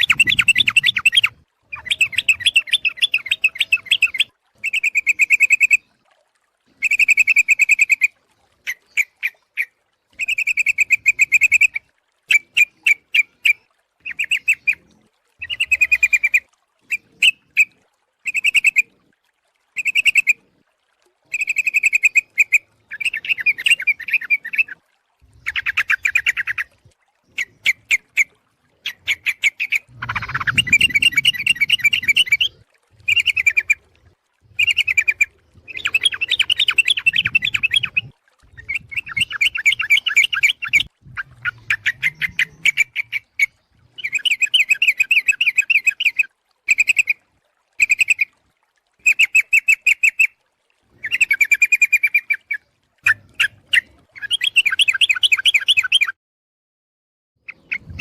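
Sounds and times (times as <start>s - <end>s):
bird bubbly chattering call: 0.0s - 5.9s, 6.8s - 18.9s, 19.8s - 20.4s, 21.3s - 47.2s, 47.8s - 48.4s, 49.0s - 50.4s, 51.0s - 56.2s, 57.5s - 58.0s.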